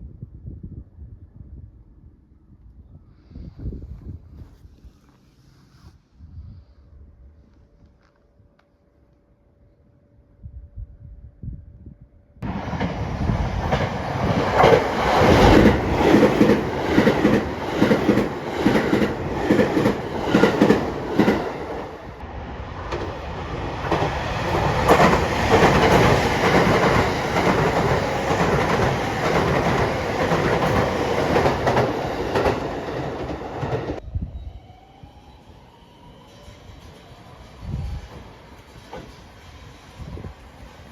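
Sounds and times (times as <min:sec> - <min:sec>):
train rushing noise: 0:12.4 - 0:34.0, 0:35.4 - 0:40.9
train wheels clattering: 0:12.5 - 0:22.2, 0:22.9 - 0:34.0.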